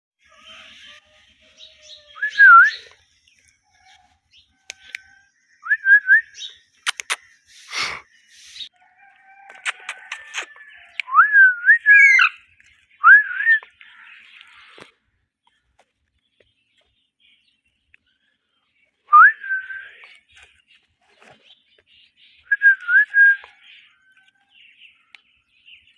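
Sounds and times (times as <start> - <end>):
sharp clicks: 6.8 - 7.2
parakeet whistled chirps: 11.8 - 12.4.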